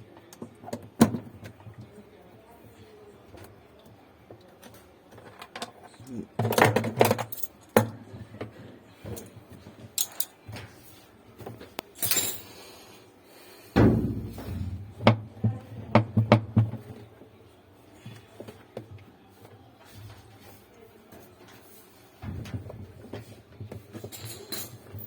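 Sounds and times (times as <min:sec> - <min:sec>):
knocks and clatters of tools: 0:04.6 - 0:10.8, 0:22.2 - 0:25.0
heavy thump: 0:13.8 - 0:15.2.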